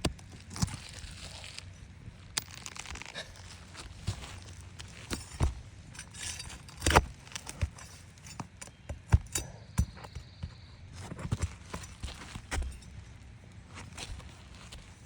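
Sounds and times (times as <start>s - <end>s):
nails pried from shingles: 2.4s - 10.3s.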